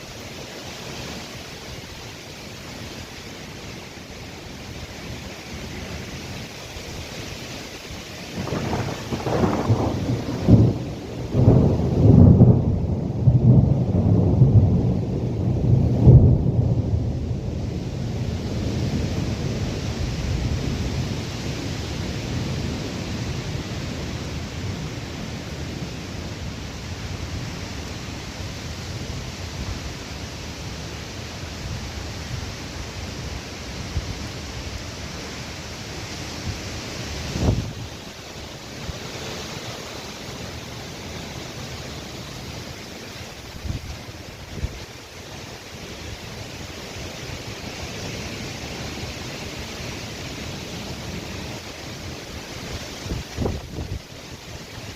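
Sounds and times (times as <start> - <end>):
rain: 0.0 - 54.9
wind: 0.0 - 54.9
thunder rumbling: 8.3 - 25.8.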